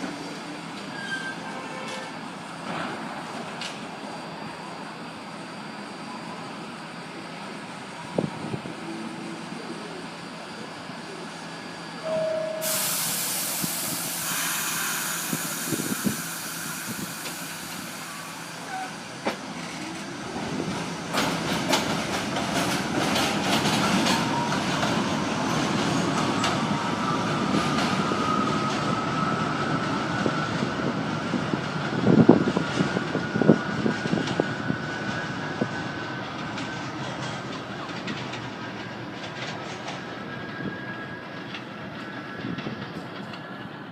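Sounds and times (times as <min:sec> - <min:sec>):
train motor whine: 0:11.2 - 0:21.4
loud air hiss: 0:12.5 - 0:19.1.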